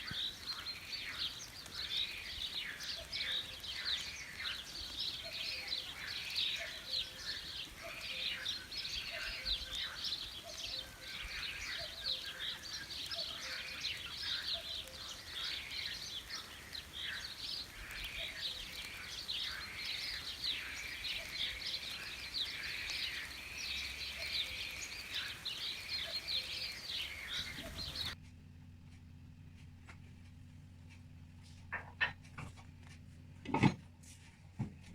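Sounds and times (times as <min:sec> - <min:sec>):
small birds chirping: 0:00.0 - 0:34.9.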